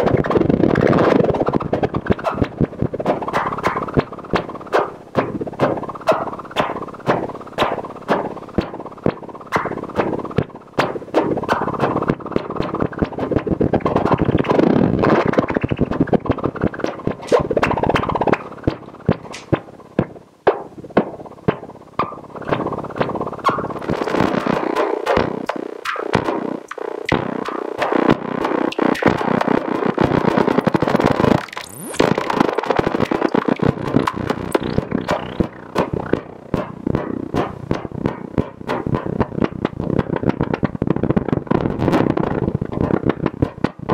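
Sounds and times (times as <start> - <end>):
synthesizer noise with clicks: 0.0 - 43.9
synthesizer sweep: 30.5 - 38.5.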